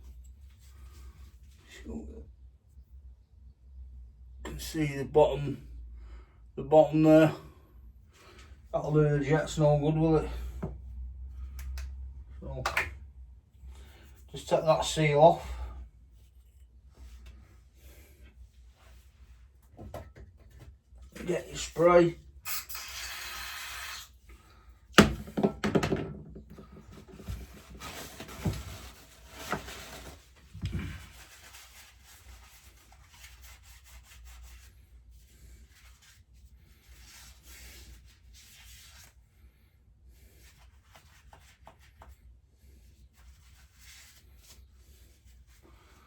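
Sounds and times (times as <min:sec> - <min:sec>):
metal parts knocking on workbench: 0:25.0 - 0:26.4
faint rubbing: 0:26.8 - 0:39.1.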